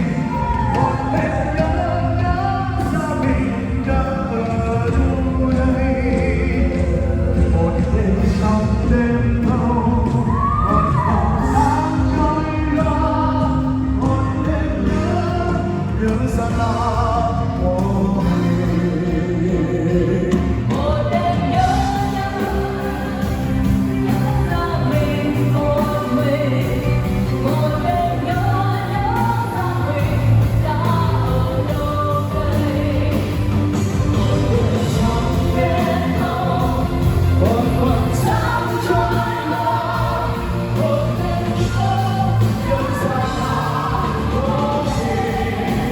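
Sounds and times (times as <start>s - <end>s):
live band playing pop song: 0.0s - 45.9s
steady bass: 0.0s - 45.9s
woman singing: 0.0s - 45.9s.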